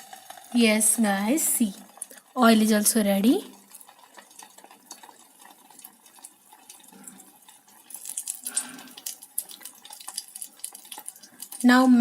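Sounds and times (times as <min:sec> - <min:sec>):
hot oil crackling and popping: 0:00.0 - 0:12.0.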